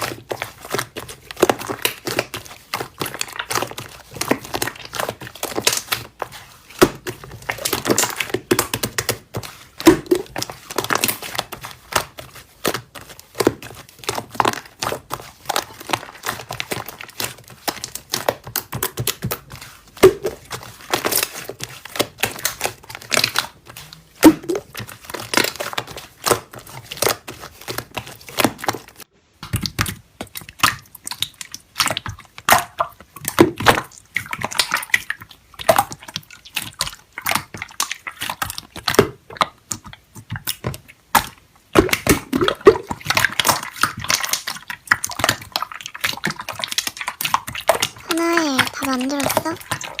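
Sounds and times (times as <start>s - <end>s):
slime squished by hand: 0.0s - 50.0s.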